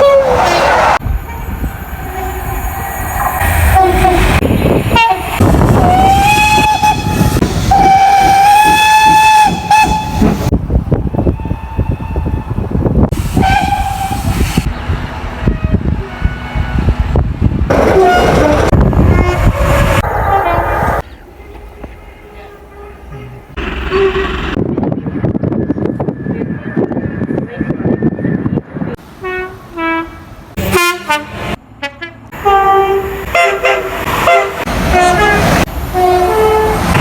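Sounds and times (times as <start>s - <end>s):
train engine and wheel noise: 0.0s - 37.0s
train horn blasts: 3.6s - 10.3s, 13.4s - 14.2s, 17.9s - 24.4s, 29.2s - 37.0s.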